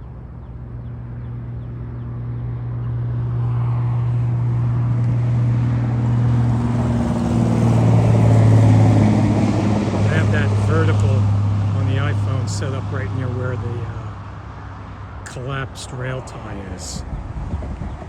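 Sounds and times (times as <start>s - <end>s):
diesel locomotive engine drone: 0.0s - 18.0s
rumble of train: 17.0s - 18.0s.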